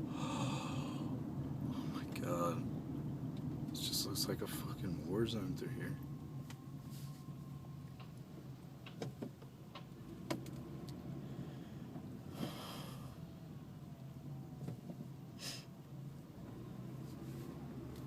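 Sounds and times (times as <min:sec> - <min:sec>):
car engine and road hum: 0:00.0 - 0:18.0
short breathy hisses: 0:15.4 - 0:15.7.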